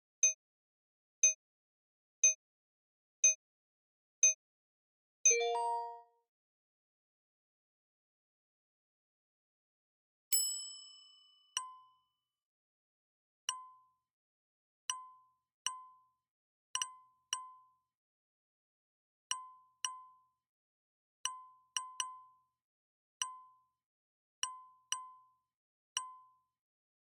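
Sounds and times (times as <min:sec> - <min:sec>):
multi-tone chime: 0:05.3 - 0:06.0.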